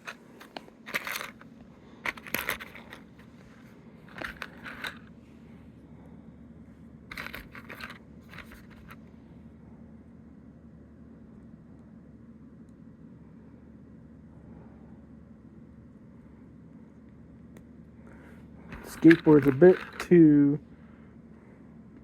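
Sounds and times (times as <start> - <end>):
plastic toy parts clicking: 18.7 - 20.2.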